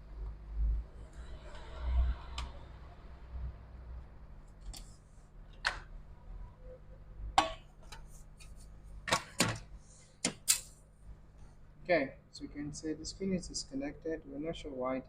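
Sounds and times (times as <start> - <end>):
low steady hum: 0.0 - 15.0
clicks and knocks of tools: 9.1 - 10.8.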